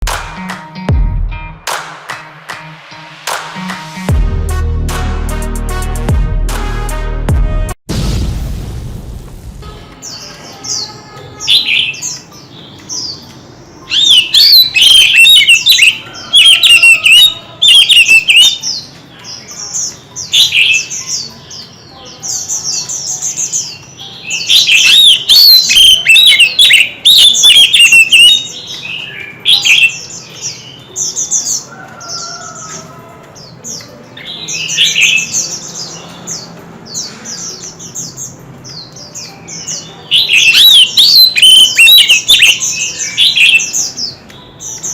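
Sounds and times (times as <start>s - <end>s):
bird singing whistled phrases: 13.9s - 18.6s, 24.3s - 30.0s, 40.1s - 44.2s.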